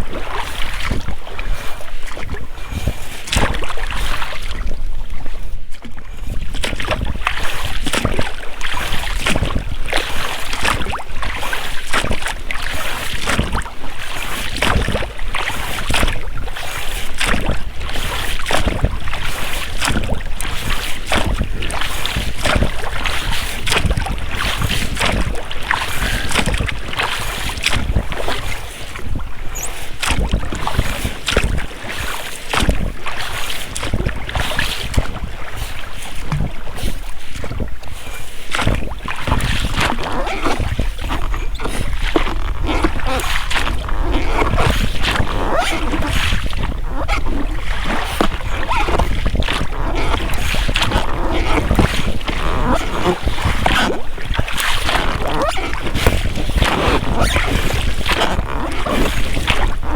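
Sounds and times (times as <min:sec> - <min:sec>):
oars dipping and splashing: 0:00.0 - 0:59.9
rubber rowlocks creaking: 0:17.2 - 0:59.9.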